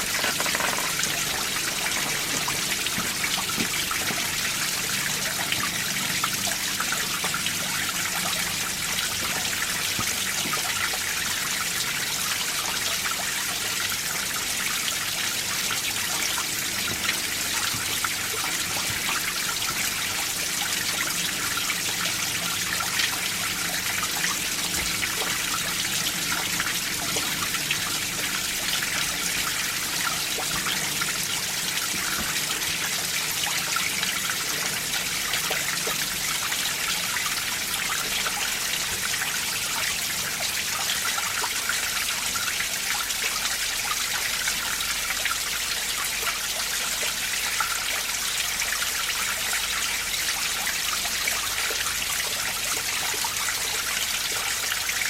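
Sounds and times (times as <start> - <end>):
stream trickling over rocks: 0.0 - 55.0.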